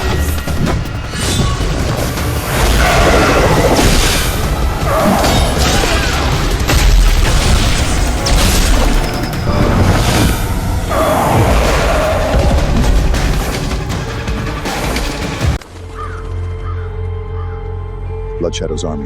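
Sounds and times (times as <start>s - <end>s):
deep booms: 0.0s - 15.6s
crashing impacts: 0.0s - 16.0s
dramatic music: 0.0s - 19.0s.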